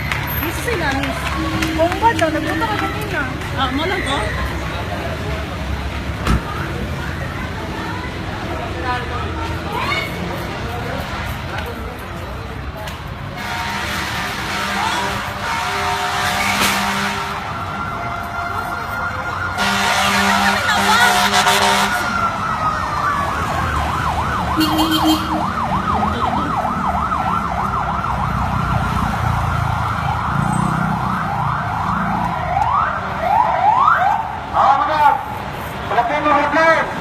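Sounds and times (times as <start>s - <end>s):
emergency vehicle siren: 13.5s - 37.0s.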